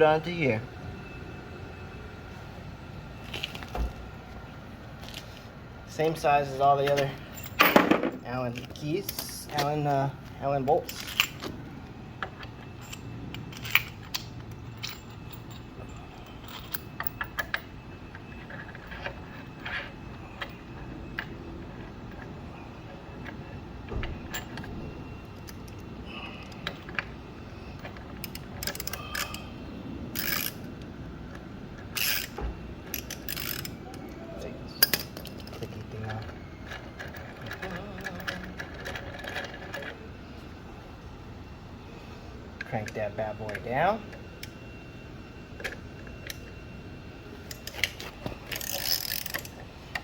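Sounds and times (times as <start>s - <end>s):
ratchet wrench ratcheting: 28.2s - 29.4s, 30.1s - 30.6s, 32.0s - 33.7s, 48.5s - 49.6s.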